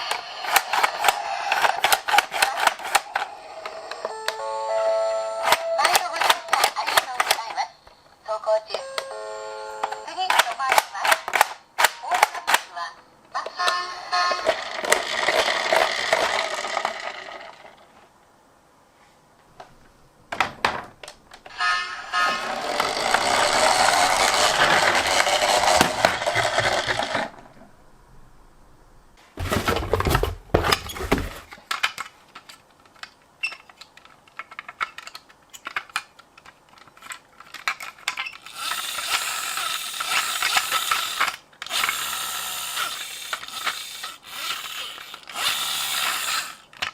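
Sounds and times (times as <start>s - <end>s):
toy cars rattling and whirring: 0.0s - 3.9s, 5.4s - 7.7s, 13.6s - 18.0s, 21.5s - 27.5s, 29.4s - 46.9s
clicks and clatter: 29.4s - 42.0s.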